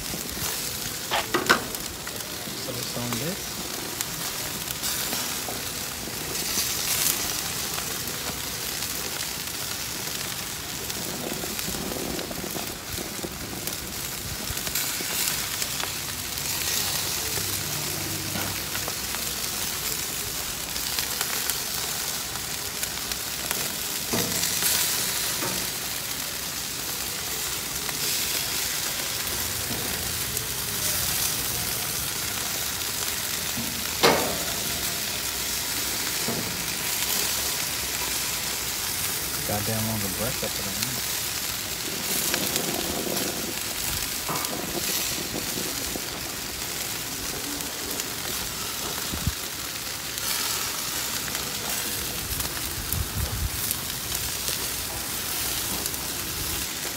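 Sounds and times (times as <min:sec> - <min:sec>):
meat sizzling on a grill: 0:00.0 - 0:56.9.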